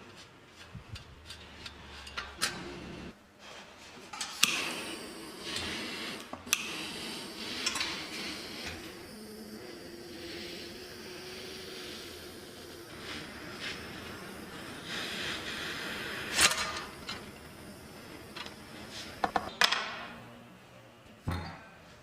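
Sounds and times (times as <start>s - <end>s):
steady hiss: 4.3s - 19.5s.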